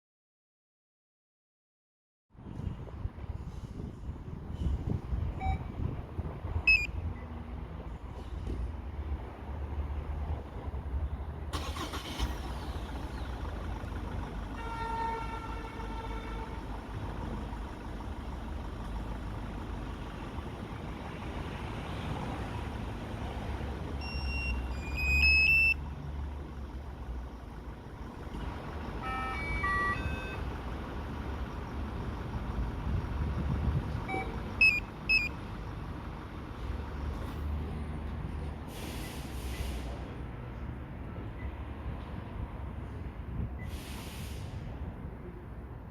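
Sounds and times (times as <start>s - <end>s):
car alarm beeps and melodies: 5.4s - 5.7s, 6.7s - 7.0s, 24.0s - 25.8s, 29.0s - 30.5s, 34.1s - 35.4s
car alarm chirps: 6.7s - 6.9s, 24.0s - 25.8s, 29.0s - 30.4s, 34.1s - 35.4s.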